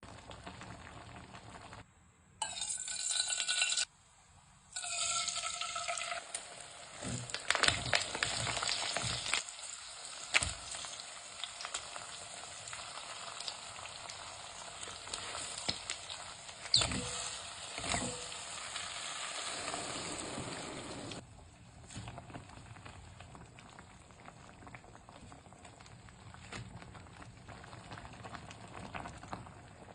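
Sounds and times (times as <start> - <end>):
food sizzling in a hot pan: 4.8 - 21.2.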